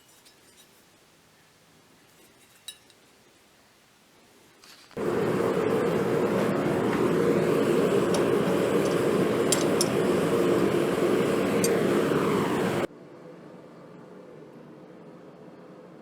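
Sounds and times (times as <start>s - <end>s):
faint steady hum: 0.0s - 16.0s
workshop machinery roaring: 5.0s - 12.9s.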